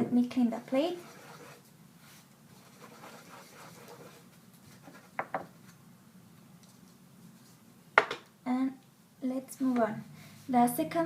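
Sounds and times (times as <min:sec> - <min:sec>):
rubbing and scratching on plate: 0:00.6 - 0:05.3.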